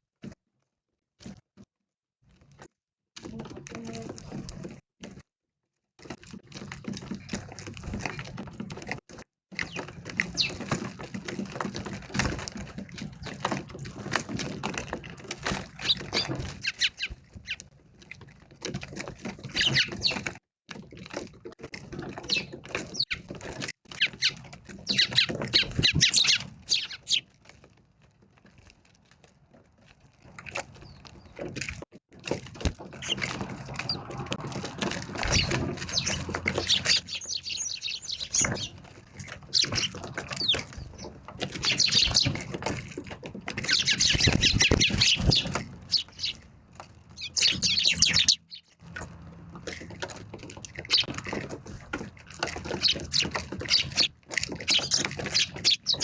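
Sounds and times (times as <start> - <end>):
birds pecking and hopping: 0.2 - 5.3, 6.0 - 56.0
sparrows chirping: 9.6 - 10.8, 15.8 - 17.6, 19.4 - 20.2, 22.2 - 23.3, 23.9 - 27.3, 30.8 - 31.4, 32.9 - 42.5, 43.6 - 46.5, 47.1 - 48.9, 50.6 - 51.3, 52.3 - 56.0.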